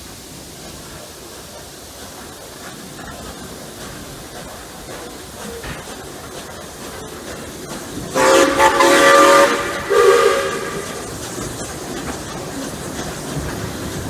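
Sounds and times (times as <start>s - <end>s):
train running: 0.0s - 14.0s
steam locomotive whistle: 8.1s - 11.2s.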